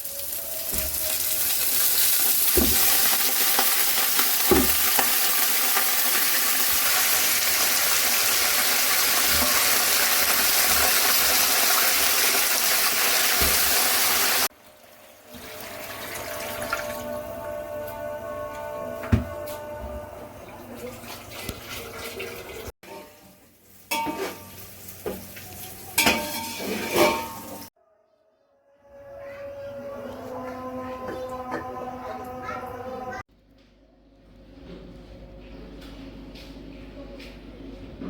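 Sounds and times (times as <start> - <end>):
food sizzling in hot oil: 0.0 - 14.5, 23.5 - 27.7
background music: 27.8 - 33.2.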